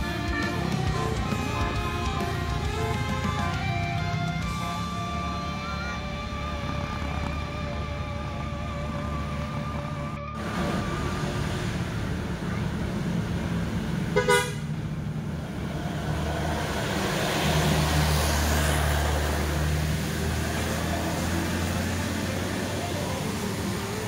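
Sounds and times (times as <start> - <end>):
heavy vehicle engine rumbling: 0.0 - 24.0
road traffic: 0.0 - 24.0
car horn toot: 14.2 - 14.7.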